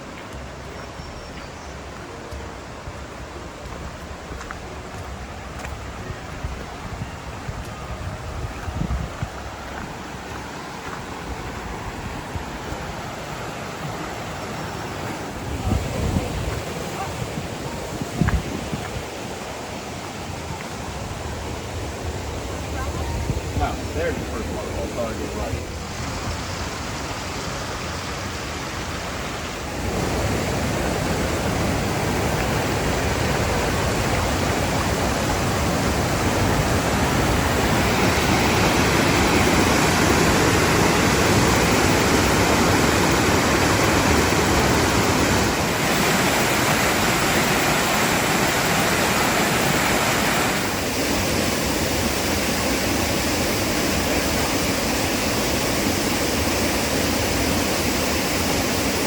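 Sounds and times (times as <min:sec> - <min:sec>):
waterfall roaring: 0:01.4 - 0:59.0.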